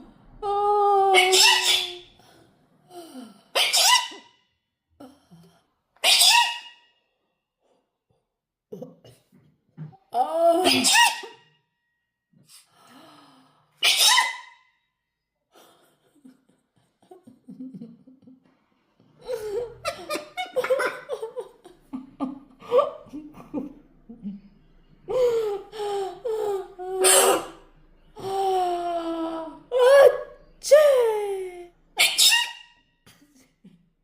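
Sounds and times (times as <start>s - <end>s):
laughter with gasping breaths: 15.5s - 27.1s, 33.1s - 34.0s
person sneezing: 27.0s - 27.6s.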